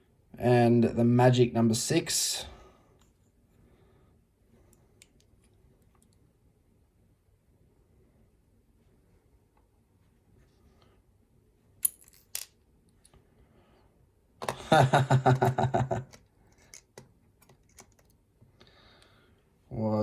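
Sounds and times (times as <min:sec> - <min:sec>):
lock parts clicking: 0:11.8 - 0:12.6, 0:16.1 - 0:18.2.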